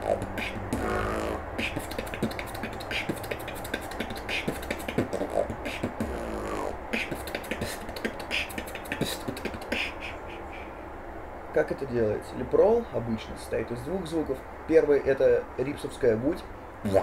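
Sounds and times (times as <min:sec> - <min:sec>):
lip roll buzzing: 0:00.0 - 0:10.2
beatboxing clicks and hits: 0:00.0 - 0:10.7.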